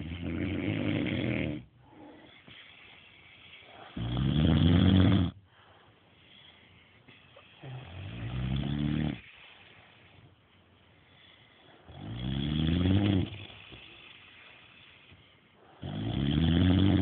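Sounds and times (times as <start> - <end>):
man snoring: 0.0 - 2.6, 3.7 - 5.4, 7.6 - 9.3, 11.9 - 14.3, 15.8 - 17.0
quiet breathing: 0.0 - 16.2.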